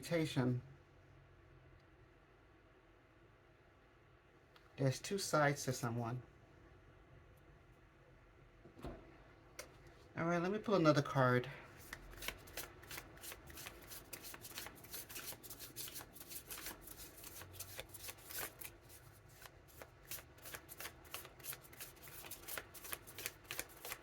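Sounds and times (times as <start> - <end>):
cards being shuffled: 11.8 - 24.0.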